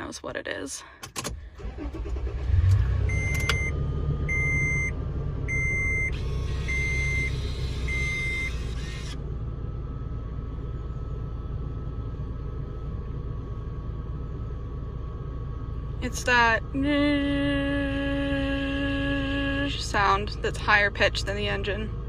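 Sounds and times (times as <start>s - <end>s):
car engine starting and idling: 0.0s - 22.0s
dashboard warning chime beeping: 3.0s - 8.8s.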